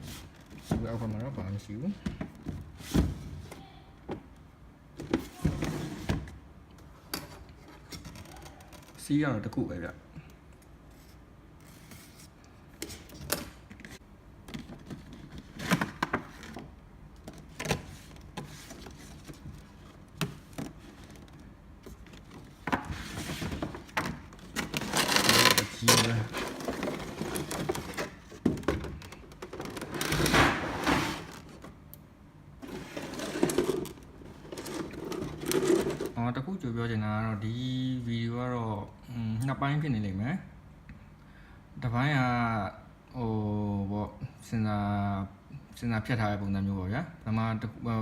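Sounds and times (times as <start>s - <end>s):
packaging rustling scrapes: 24.4s - 28.4s, 32.6s - 36.1s.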